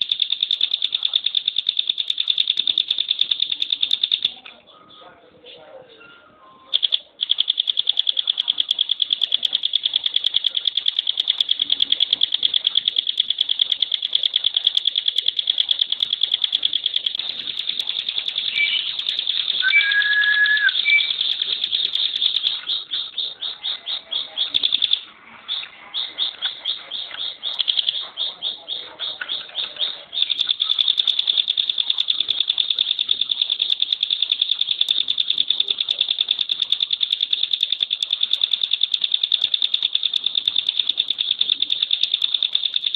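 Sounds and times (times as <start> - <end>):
bird singing fast trill: 15.2 - 32.0
bird whistle: 18.5 - 19.0, 19.6 - 21.3.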